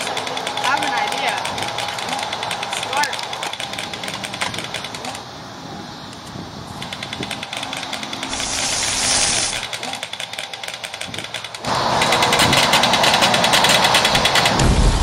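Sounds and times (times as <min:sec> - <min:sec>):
small motor rattling: 0:06.8 - 0:10.2
burst of hiss: 0:08.3 - 0:09.7.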